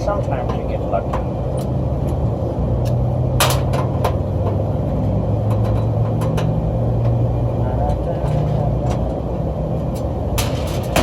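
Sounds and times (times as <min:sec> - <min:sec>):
low mechanical drone: 0:00.0 - 0:11.0
metal panels clicking and knocking: 0:03.4 - 0:04.6, 0:05.4 - 0:07.2, 0:09.9 - 0:11.0.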